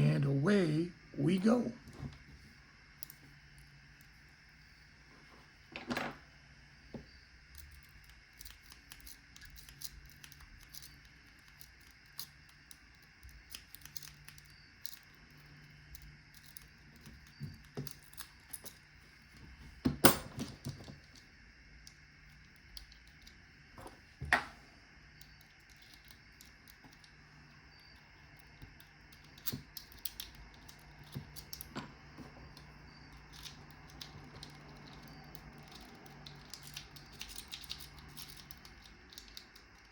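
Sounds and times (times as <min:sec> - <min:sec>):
lock picks clicking in padlock: 0:07.5 - 0:18.8, 0:28.0 - 0:31.8, 0:32.5 - 0:39.9.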